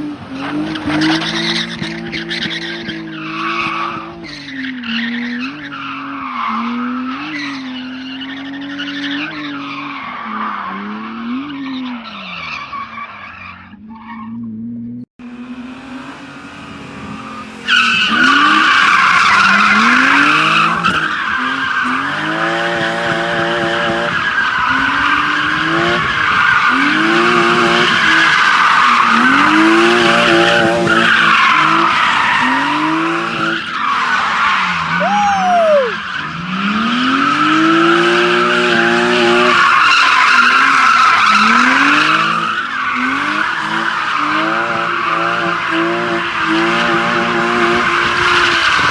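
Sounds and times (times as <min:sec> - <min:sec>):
loud tyre screech: 0:00.0 - 0:14.6, 0:15.2 - 0:48.9
car engine revving: 0:00.0 - 0:35.0, 0:35.8 - 0:48.9.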